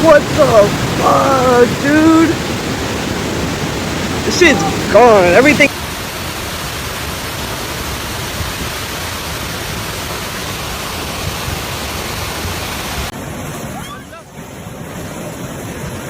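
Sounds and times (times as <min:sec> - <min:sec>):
fast-flowing river rushing: 0:00.0 - 0:16.0.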